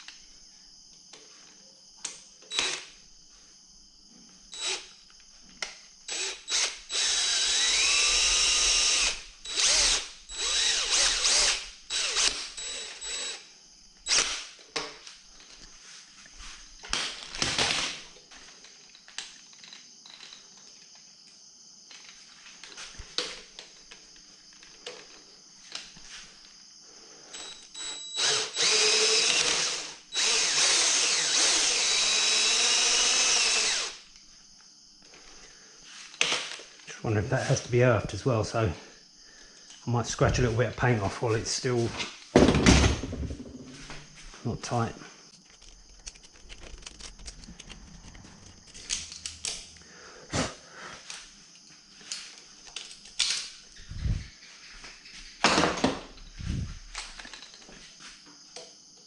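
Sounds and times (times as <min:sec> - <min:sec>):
electric drill whirring: 0:02.5 - 0:02.9, 0:04.5 - 0:04.9, 0:06.1 - 0:14.6, 0:27.3 - 0:34.0.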